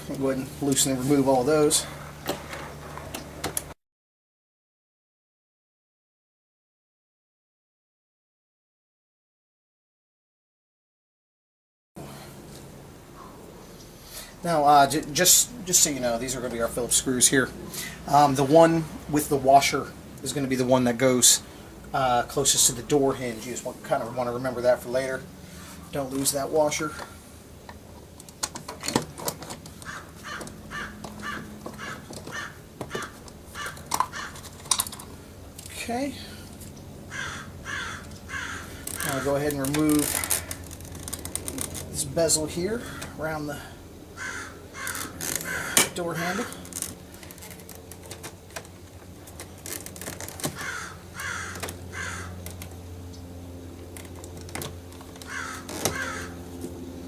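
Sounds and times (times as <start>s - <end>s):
crow cawing: 29.8s - 34.4s, 37.1s - 39.4s, 42.8s - 43.2s, 44.2s - 46.6s, 50.6s - 52.4s, 55.2s - 56.4s
bird calling: 29.8s - 34.5s, 37.1s - 40.7s, 42.8s - 43.2s, 44.2s - 46.7s, 50.5s - 52.4s, 55.2s - 56.4s.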